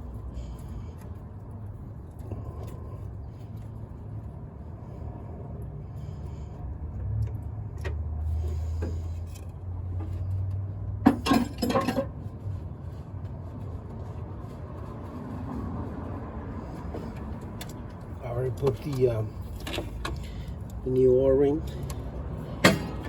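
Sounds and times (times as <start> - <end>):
steady low rumble: 0.0 - 23.0
metal tools clinking and rattling: 11.1 - 12.2.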